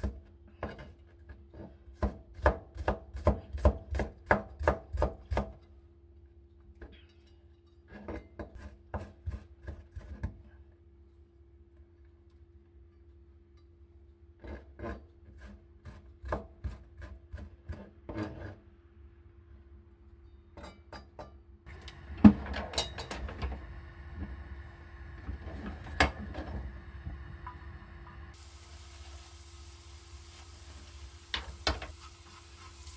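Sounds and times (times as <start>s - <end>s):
steady hiss: 21.7s - 32.9s.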